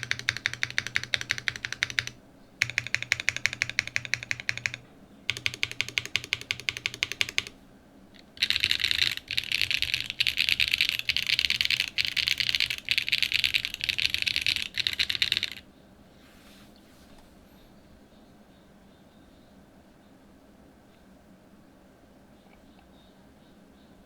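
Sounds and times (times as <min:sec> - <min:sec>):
mechanical keyboard typing: 0:00.0 - 0:07.5, 0:08.2 - 0:15.6.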